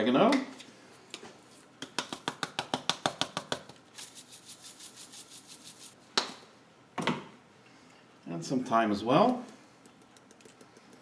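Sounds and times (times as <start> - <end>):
spice jar shaking rattle: 2.1 - 6.0, 10.0 - 11.0.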